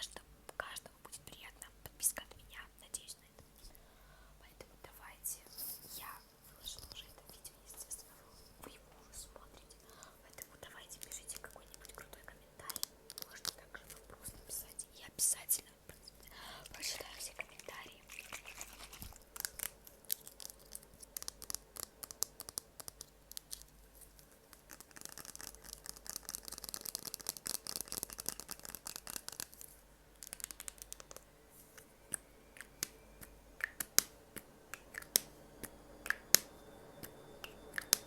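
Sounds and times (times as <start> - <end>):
high scratchy rustling: 16.8 - 19.6
small clicks and taps: 18.5 - 23.7.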